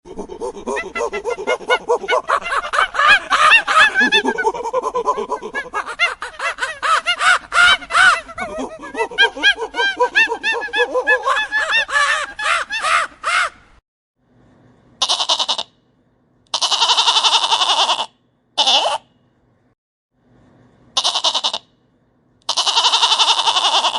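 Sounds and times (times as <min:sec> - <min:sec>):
chorus of animal calls: 0:00.0 - 0:13.6, 0:15.0 - 0:15.7, 0:16.5 - 0:19.1, 0:21.0 - 0:21.7, 0:22.5 - 0:23.9
animal call: 0:00.1 - 0:13.6, 0:15.0 - 0:15.7, 0:16.5 - 0:19.1, 0:21.0 - 0:21.7, 0:22.5 - 0:23.9.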